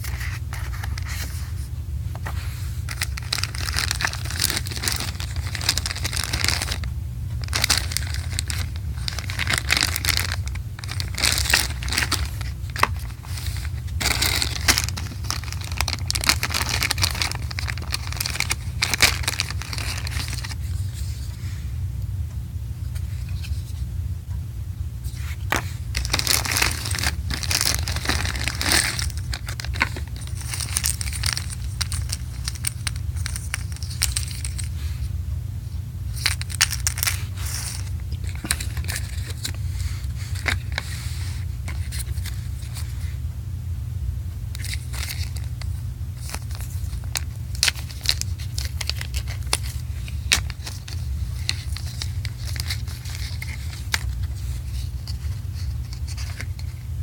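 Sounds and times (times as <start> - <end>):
steady low hum: 0.0 - 57.0
packaging crinkling and tearing: 2.8 - 20.8, 25.5 - 34.7, 36.1 - 40.9, 44.5 - 56.8.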